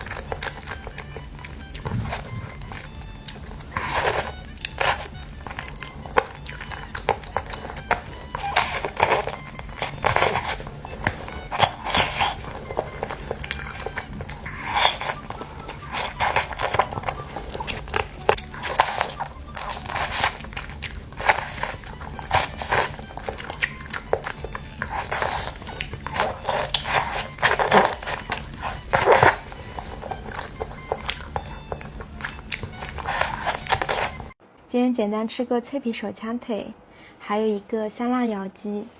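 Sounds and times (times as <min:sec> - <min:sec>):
biting and chewing chicken: 0:00.0 - 0:34.4
mouth sounds: 0:00.0 - 0:34.4.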